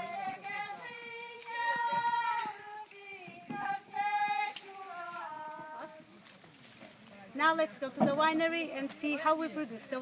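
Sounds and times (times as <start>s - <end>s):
person singing unaccompanied: 0.0s - 6.1s.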